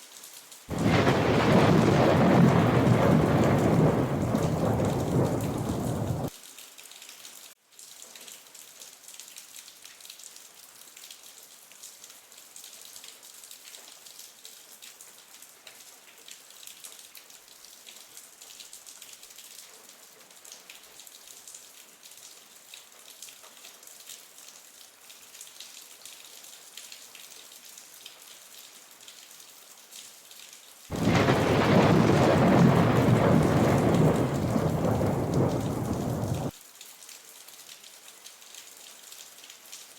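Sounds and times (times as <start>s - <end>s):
light rain patter: 0.0s - 39.9s
heavy rain rushing: 0.7s - 6.3s, 30.9s - 36.5s.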